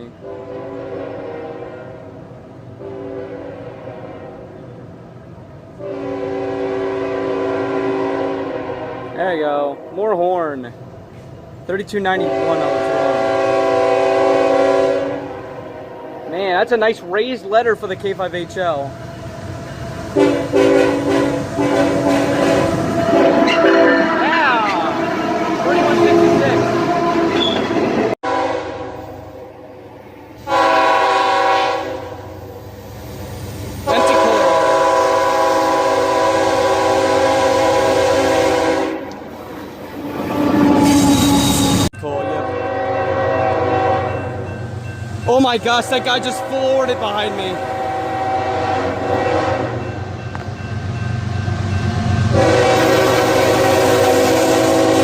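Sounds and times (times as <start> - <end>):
train horn blasts: 0.0 - 4.8, 5.8 - 10.2, 12.1 - 16.7, 20.1 - 29.7, 30.4 - 32.6, 33.8 - 39.3, 40.0 - 44.6, 45.8 - 50.1, 52.3 - 55.0.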